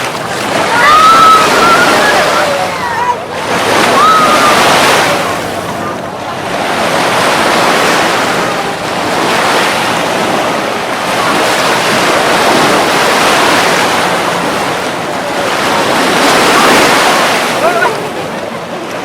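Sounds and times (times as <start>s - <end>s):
ocean surf washing on beach: 0.0s - 19.0s.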